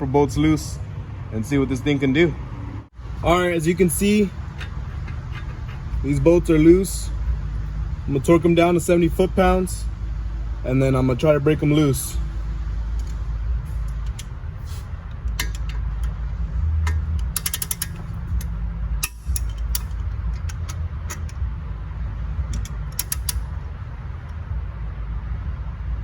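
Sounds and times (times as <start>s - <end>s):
steady low rumble: 0.0s - 26.0s
torque wrench ratchet clicking: 16.8s - 21.4s, 22.5s - 23.6s.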